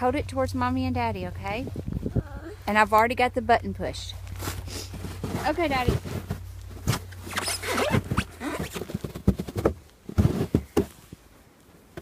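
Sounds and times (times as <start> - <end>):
low hum: 0.0 - 8.4.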